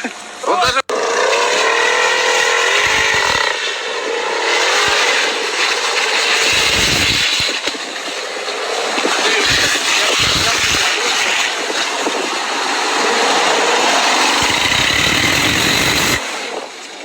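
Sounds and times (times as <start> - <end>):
car engine at high revs: 0.0 - 17.0
tyre noise: 0.0 - 17.0.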